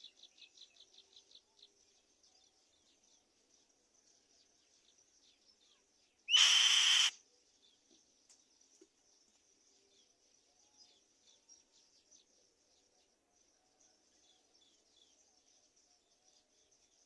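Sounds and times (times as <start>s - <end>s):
high chirping of insects or birds: 0.0s - 17.0s
kite screeching call: 6.3s - 7.1s.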